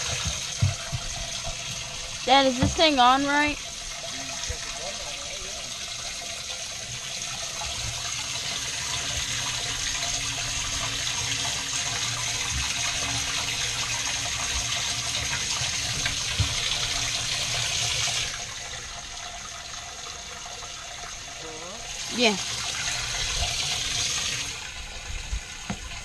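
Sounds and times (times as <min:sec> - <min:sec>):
water spraying: 0:00.0 - 0:19.1
pump running: 0:00.0 - 0:26.0.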